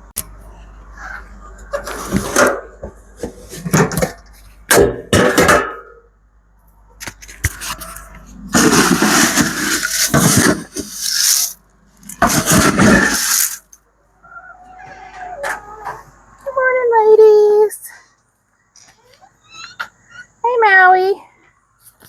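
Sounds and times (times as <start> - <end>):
grain being scooped and poured: 8.6 - 11.6, 12.3 - 13.7.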